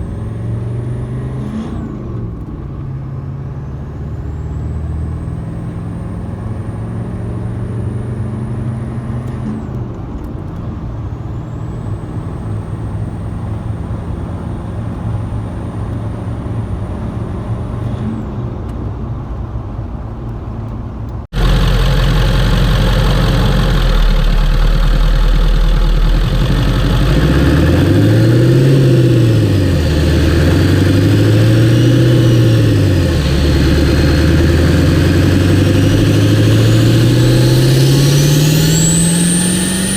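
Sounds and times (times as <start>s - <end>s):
diesel engine running: 0.0s - 1.5s, 21.3s - 39.9s
engine revving: 0.0s - 2.5s, 3.7s - 9.8s, 11.3s - 18.5s, 21.3s - 39.9s
high turbo whistle: 21.4s - 39.9s.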